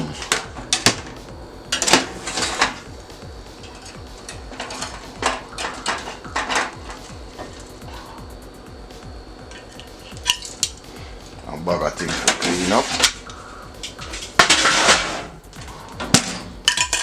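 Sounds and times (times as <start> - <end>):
pan and dishes clattering: 0.0 - 8.2, 11.8 - 17.0.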